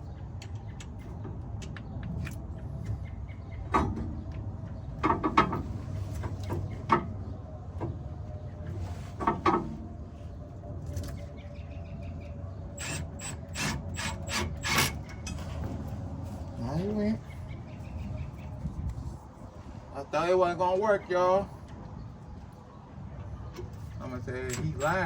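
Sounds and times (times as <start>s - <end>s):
hand tools clinking on metal: 24.4s - 25.0s.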